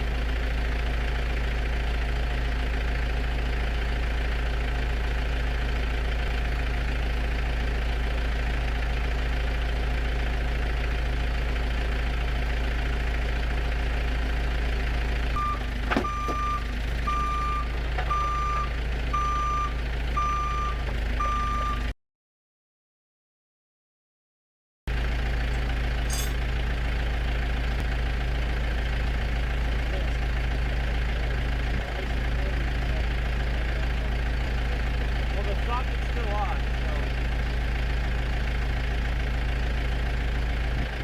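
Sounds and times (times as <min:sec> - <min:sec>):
vehicle engine running: 0:00.0 - 0:21.9, 0:24.9 - 0:41.0
reversing alarm beeping: 0:15.4 - 0:21.9
sharp metal clank: 0:26.1 - 0:26.5.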